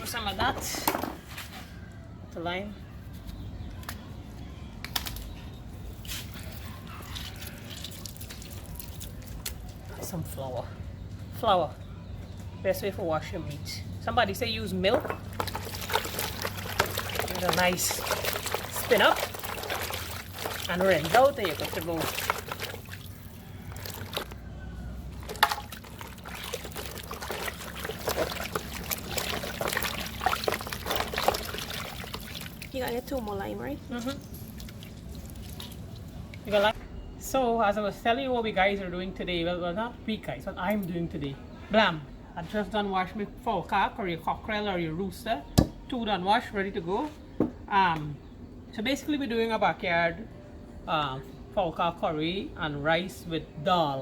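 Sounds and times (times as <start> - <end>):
wet squishing and dripping: 3.8 - 10.0, 15.2 - 36.6
water pouring and splashing: 6.0 - 9.9, 15.2 - 24.4, 25.1 - 36.5.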